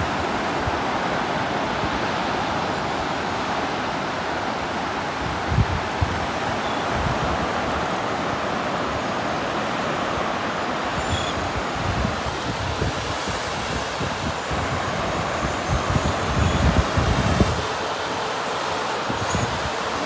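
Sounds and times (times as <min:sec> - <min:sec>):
surf washing on beach: 0:00.0 - 0:20.0
wind buffeting microphone: 0:10.3 - 0:20.0.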